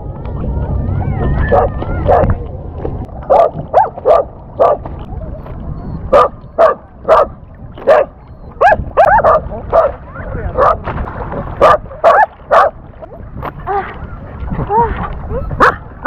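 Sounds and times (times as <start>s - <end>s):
dog barking: 6.1s - 7.3s, 7.9s - 10.0s, 11.6s - 12.8s, 15.6s - 15.8s.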